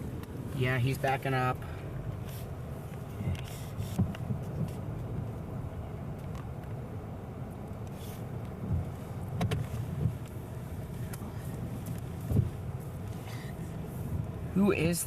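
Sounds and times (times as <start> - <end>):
car engine running: 0.0 - 15.0
light clicks and knocks: 7.8 - 10.4.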